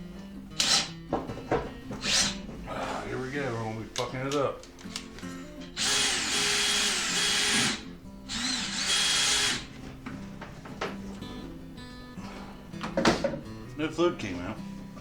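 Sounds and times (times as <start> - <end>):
power drill whining: 0.6 - 1.0, 1.9 - 3.2, 5.7 - 9.8.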